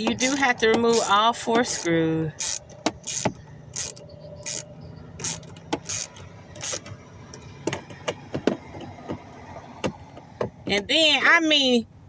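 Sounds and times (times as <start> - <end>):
ratchet clicking: 0.0 - 7.0.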